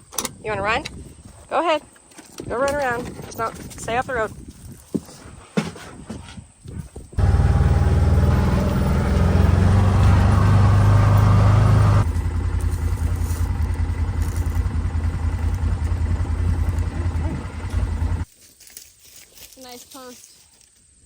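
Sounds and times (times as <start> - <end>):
motor engine humming: 7.2 - 18.3.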